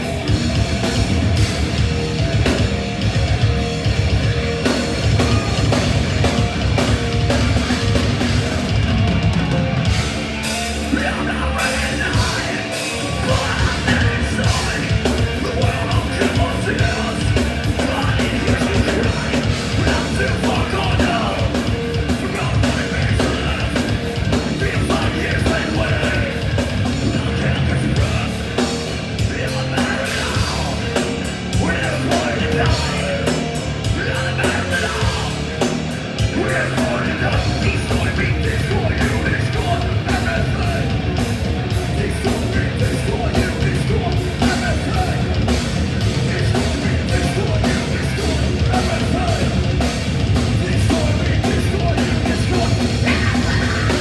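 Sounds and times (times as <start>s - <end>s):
bass guitar: 0.0s - 54.0s
distorted electric guitars: 0.0s - 54.0s
fast drums: 0.0s - 54.0s
shouted vocals: 10.9s - 28.6s, 50.6s - 54.0s.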